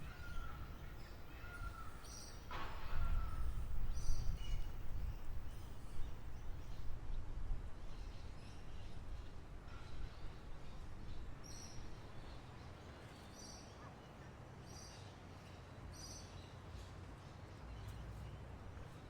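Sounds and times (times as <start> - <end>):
birds chirping: 0.0 - 6.9.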